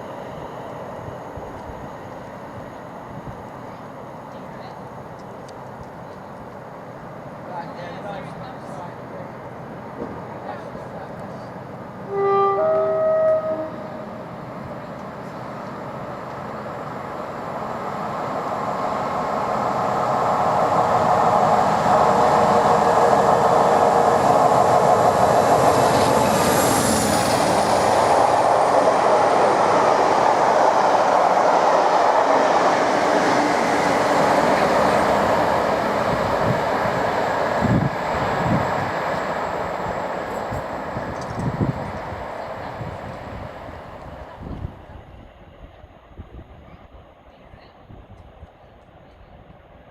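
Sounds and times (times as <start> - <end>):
diesel locomotive engine passing: 0.0 - 49.9
locomotive two-tone horn: 12.1 - 14.2.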